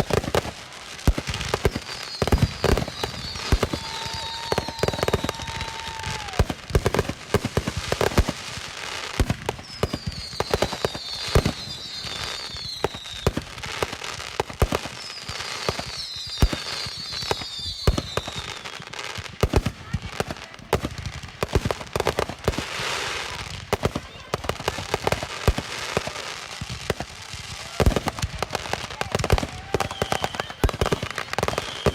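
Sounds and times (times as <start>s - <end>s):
fireworks bangs and crackles: 0.0s - 31.9s
falling firework whistles: 1.2s - 6.8s, 9.3s - 13.6s, 14.8s - 19.1s, 27.3s - 31.9s.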